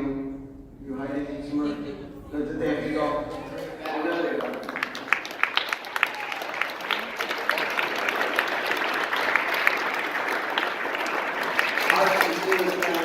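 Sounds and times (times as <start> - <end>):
audience applauding: 3.4 - 13.0.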